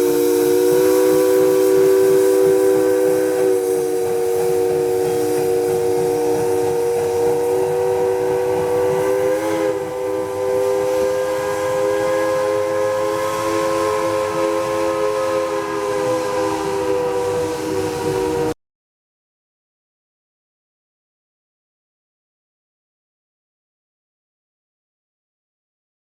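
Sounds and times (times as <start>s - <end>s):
steam locomotive chime whistle: 0.0s - 18.6s.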